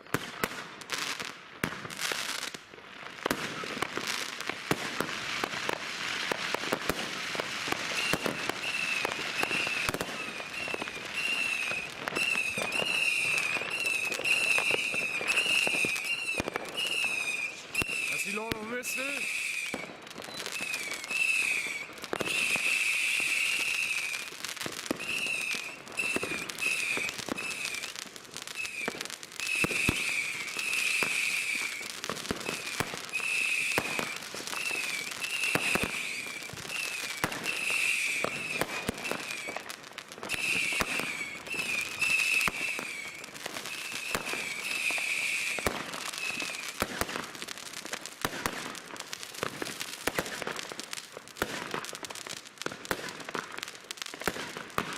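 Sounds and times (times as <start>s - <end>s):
firework bangs: 3.2s - 54.9s
shrill firework whistles: 5.0s - 47.4s.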